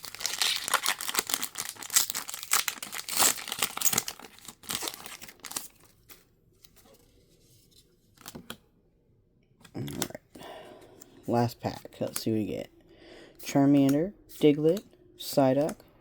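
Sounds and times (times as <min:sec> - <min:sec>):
foil wrapper tearing and crinkling: 0:00.0 - 0:06.2.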